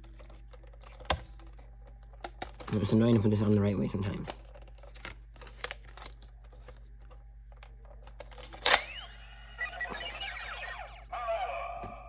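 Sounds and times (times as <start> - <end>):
falling electronic tones: 8.9 - 11.9.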